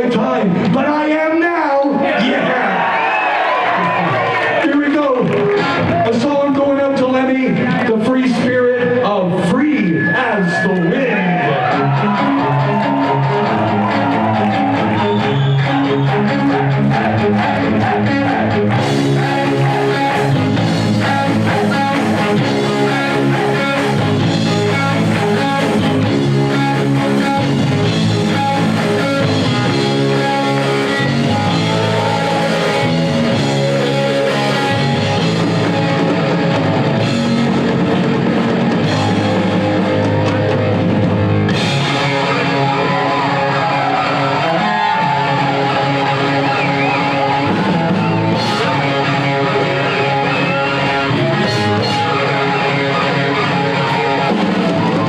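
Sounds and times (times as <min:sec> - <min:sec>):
bass guitar: 0:00.0 - 0:55.0
distorted electric guitar: 0:03.8 - 0:55.0
drum kit: 0:11.3 - 0:55.0.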